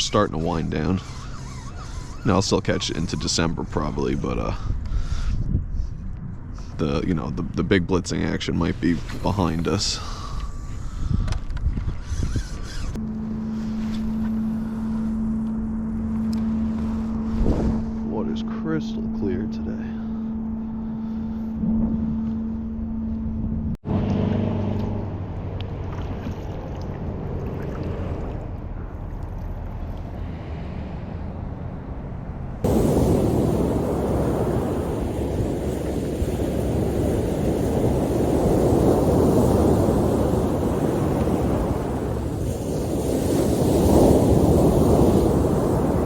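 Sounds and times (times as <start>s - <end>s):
wind buffeting microphone: 1.8s - 13.0s, 16.9s - 18.1s, 32.6s - 46.0s
low steady hum: 12.9s - 30.0s
ocean surf rushing: 32.6s - 46.0s.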